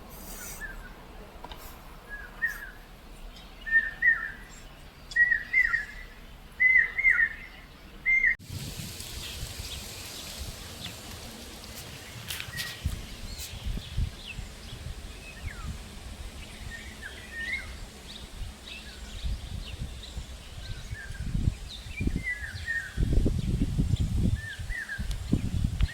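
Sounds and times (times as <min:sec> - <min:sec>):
outdoor hiss: 0:00.0 - 0:03.7, 0:08.4 - 0:25.9
low rumbles: 0:08.4 - 0:15.8.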